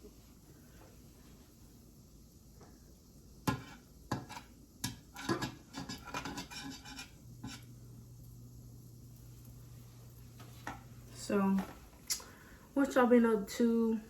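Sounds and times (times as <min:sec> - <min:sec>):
low steady hum: 0:00.0 - 0:14.0
dishes and utensils clattering: 0:03.5 - 0:07.7.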